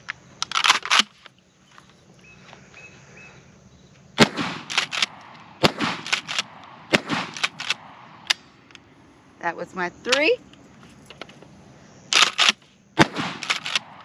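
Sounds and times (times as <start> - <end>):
shotgun shots: 4.2 - 8.6, 12.1 - 14.0.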